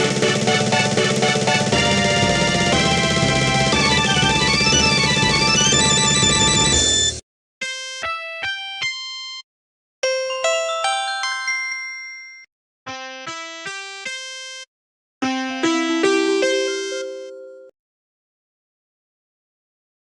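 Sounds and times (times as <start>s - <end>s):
bell-like phone ringtones: 3.8s - 7.2s, 10.1s - 12.5s, 15.4s - 17.7s.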